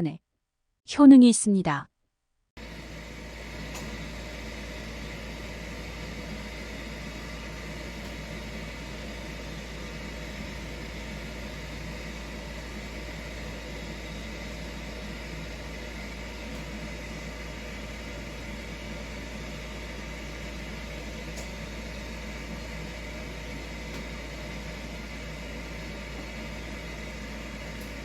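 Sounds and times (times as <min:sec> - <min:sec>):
machine hum with fan noise: 0:02.6 - 0:28.0.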